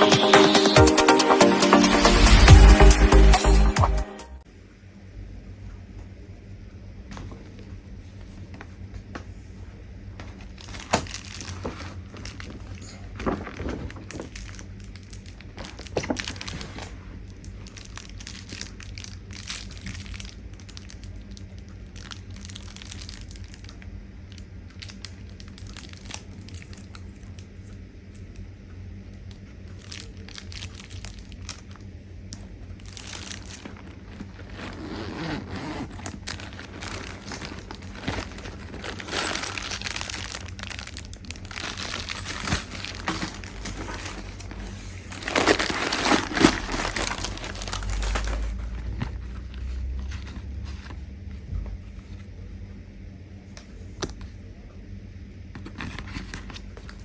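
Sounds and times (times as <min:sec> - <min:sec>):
low steady hum: 0:04.4 - 0:57.0
packaging rustling and crinkling: 0:10.2 - 0:27.5, 0:29.3 - 0:52.3, 0:55.6 - 0:57.0.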